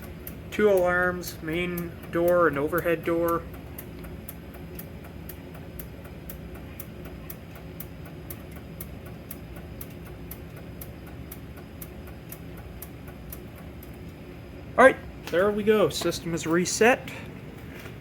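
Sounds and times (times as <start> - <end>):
steady ticking: 0.0 - 14.7
low steady hum: 0.0 - 18.0.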